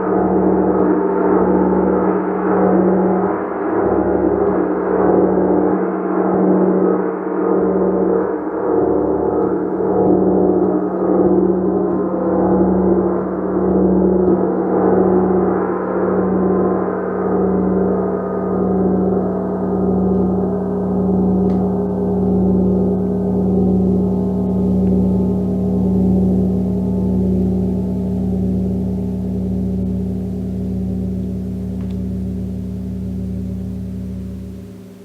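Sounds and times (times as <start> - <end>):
gong drone: 13.5 - 35.0.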